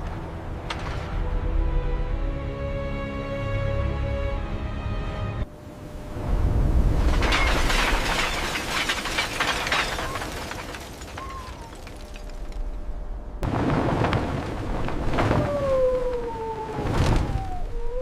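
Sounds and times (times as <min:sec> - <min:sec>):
crashing and crackling debris: 0:06.4 - 0:17.6
deep rumble: 0:12.1 - 0:18.0.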